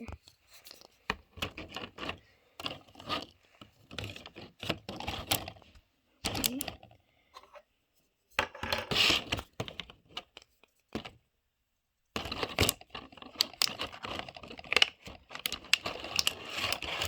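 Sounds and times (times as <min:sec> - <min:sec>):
plastic toy pieces clicking: 0:06.3 - 0:06.8, 0:12.5 - 0:17.0
packaging rustling: 0:12.3 - 0:17.0.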